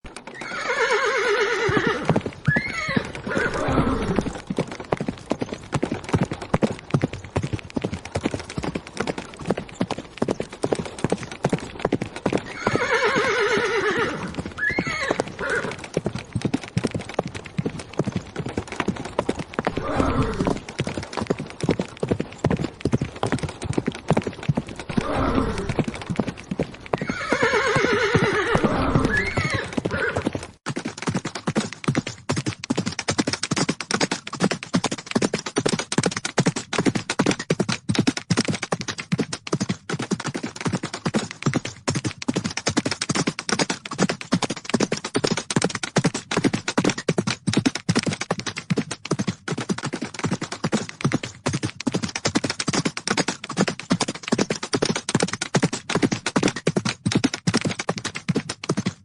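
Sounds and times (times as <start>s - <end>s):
horses galloping hoofbeats: 0.0s - 59.0s
horse whinnying: 0.3s - 4.4s, 12.4s - 15.9s, 19.7s - 20.6s, 24.9s - 25.9s, 27.0s - 30.3s.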